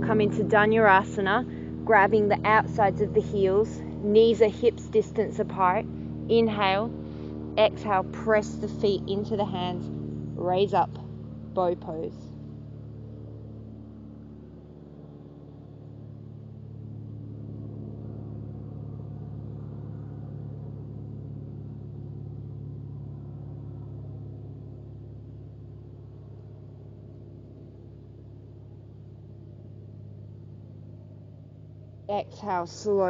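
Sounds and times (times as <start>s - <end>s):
ambient drone chords: 0.0s - 33.0s.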